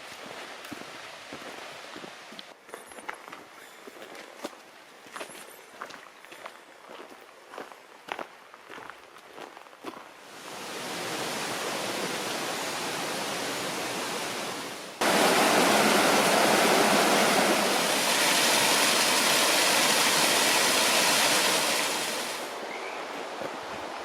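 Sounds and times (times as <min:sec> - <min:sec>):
rushing water: 0:10.3 - 0:24.0.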